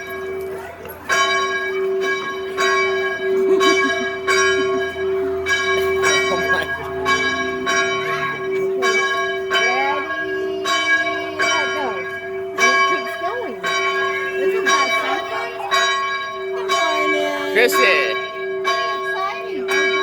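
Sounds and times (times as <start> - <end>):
bell clanging: 0.0 - 20.0.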